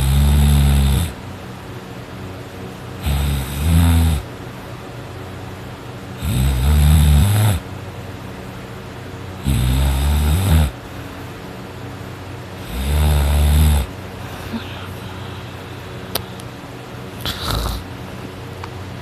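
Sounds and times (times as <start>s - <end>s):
person snoring loudly: 0.0s - 1.2s, 3.0s - 4.3s, 6.2s - 7.6s, 9.4s - 10.8s, 12.6s - 13.9s, 17.2s - 17.9s.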